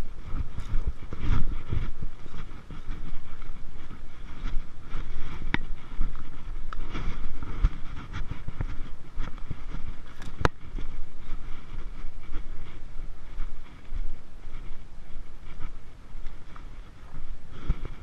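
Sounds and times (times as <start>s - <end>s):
wind rumble on microphone: 0.0s - 18.0s.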